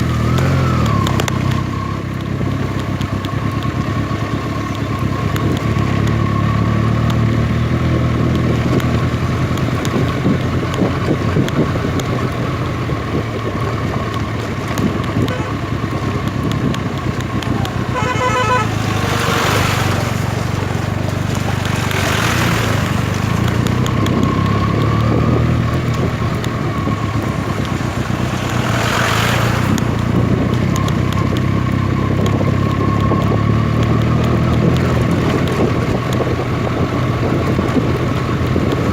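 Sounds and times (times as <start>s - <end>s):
motorcycle engine running: 0.0s - 38.9s
vehicle horn short pulses: 15.2s - 15.7s, 17.6s - 20.0s.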